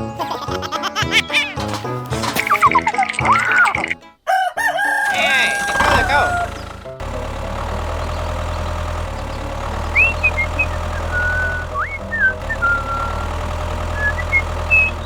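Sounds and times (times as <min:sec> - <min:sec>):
tractor engine idling: 0:04.8 - 0:15.0
rising whistle-like chirps: 0:09.9 - 0:13.3, 0:14.0 - 0:15.0.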